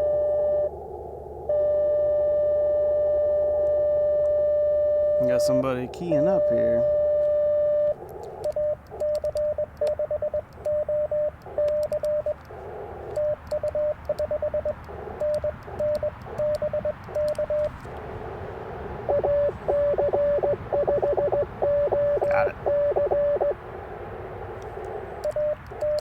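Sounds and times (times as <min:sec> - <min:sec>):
morse code tones: 0:00.0 - 0:00.8, 0:01.5 - 0:26.0
radio band hiss: 0:05.2 - 0:07.0, 0:10.4 - 0:26.0.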